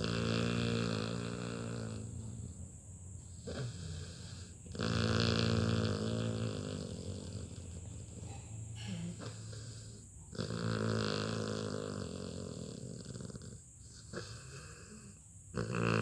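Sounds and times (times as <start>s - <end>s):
puppy breathing: 0.0s - 16.0s
puppy snoring: 0.0s - 16.0s.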